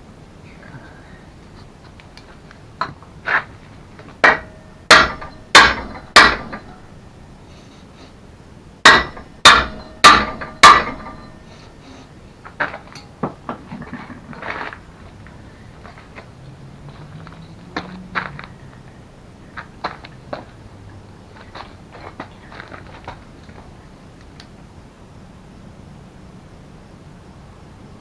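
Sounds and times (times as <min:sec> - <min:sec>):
hammer striking metal pin: 0:04.2 - 0:06.9, 0:08.9 - 0:11.5.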